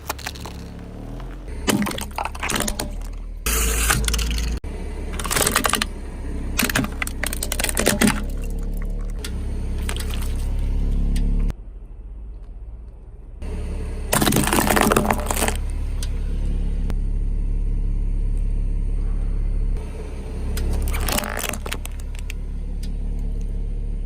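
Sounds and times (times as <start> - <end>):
tyre crushing an object: 0.0 - 4.6, 6.6 - 8.9, 9.8 - 10.6, 14.2 - 15.8, 20.6 - 22.4
car engine running at low revs: 0.0 - 24.0.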